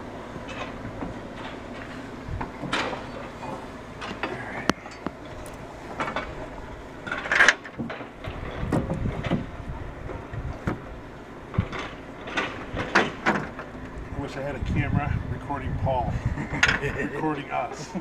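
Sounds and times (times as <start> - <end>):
knocks and clatter of repair work: 0.4 - 10.8, 11.5 - 14.1, 16.4 - 17.0.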